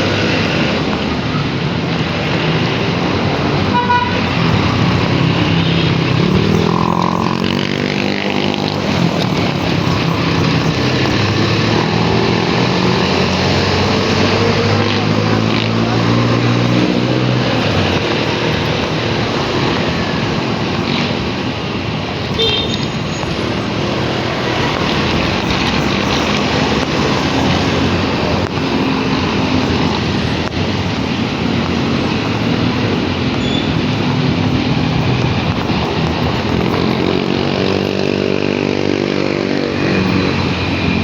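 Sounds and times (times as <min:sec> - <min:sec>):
motorcycle engine hum: 0:00.0 - 0:41.0
wind noise: 0:00.0 - 0:41.0.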